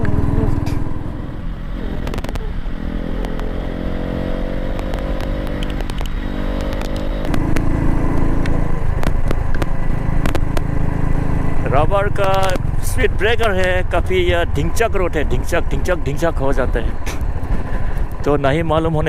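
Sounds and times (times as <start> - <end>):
motorcycle engine running: 0.0 - 19.0
sharp clicks: 2.0 - 2.5, 3.2 - 3.6, 4.7 - 10.7.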